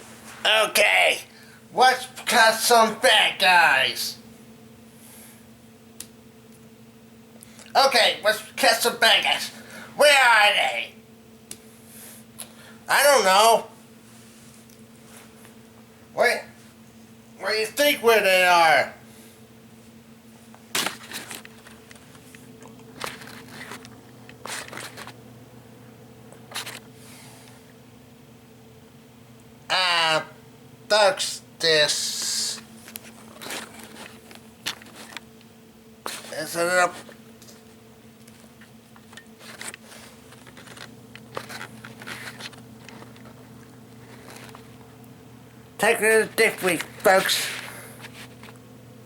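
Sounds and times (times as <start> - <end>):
steady low hum: 0.0 - 49.0
clicking and rustling handling: 20.5 - 25.2, 32.8 - 35.5, 36.1 - 45.1, 46.6 - 48.6.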